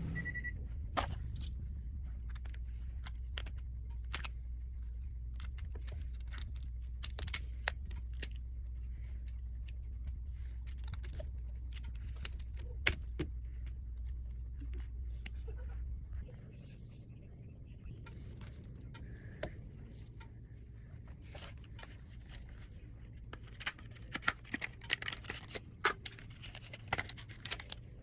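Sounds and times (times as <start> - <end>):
low hum: 0.0 - 28.0.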